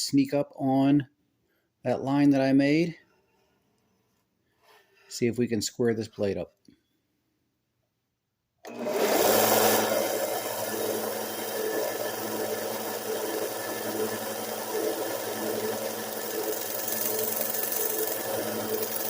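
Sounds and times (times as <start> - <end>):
belt sander grinding metal: 8.7 - 19.0.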